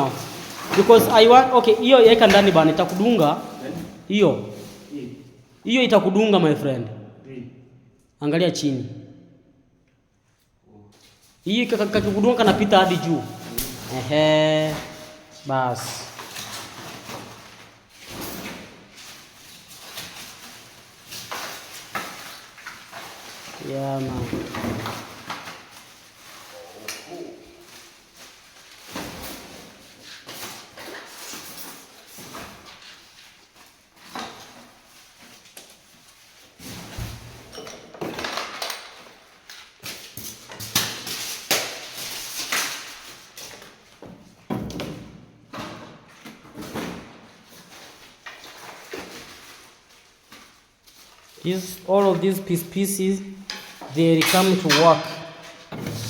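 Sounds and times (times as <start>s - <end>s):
objects scraping: 0.0s - 5.0s, 51.4s - 56.0s.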